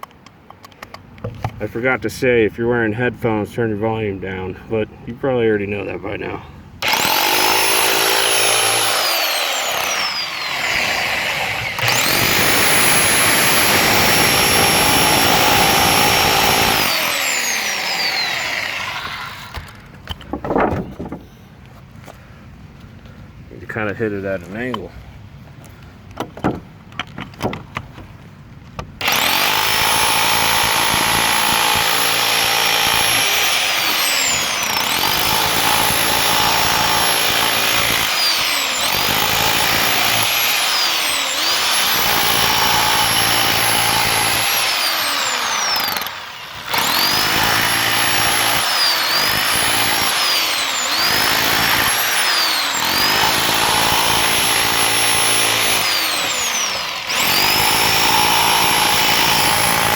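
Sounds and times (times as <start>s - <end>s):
rotary hammer chipping concrete: 6.8s - 19.8s, 29.0s - 59.9s
knocks: 19.5s - 21.3s, 26.2s - 27.7s.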